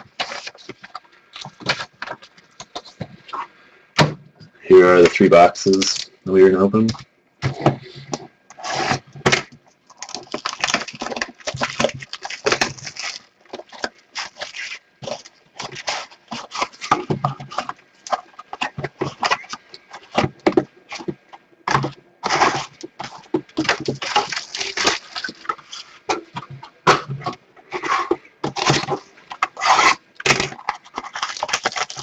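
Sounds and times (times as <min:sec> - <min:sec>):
shrink wrap and cardboard tearing: 0:04.9 - 0:06.1, 0:08.5 - 0:21.1, 0:21.7 - 0:32.0.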